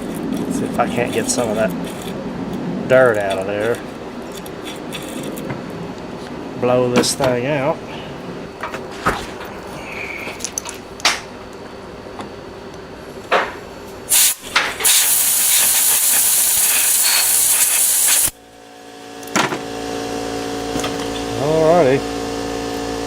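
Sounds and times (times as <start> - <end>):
steady hum with tones: 0.0 - 23.0
compressed air blasts: 14.1 - 18.4.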